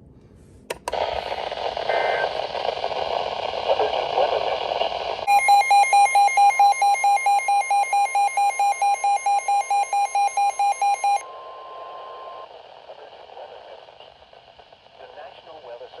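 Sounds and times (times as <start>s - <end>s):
faint radio hiss: 0.2s - 7.0s, 10.7s - 16.0s
rapid alarm beeping: 5.3s - 11.2s
steady warning alarm tone: 5.3s - 11.2s.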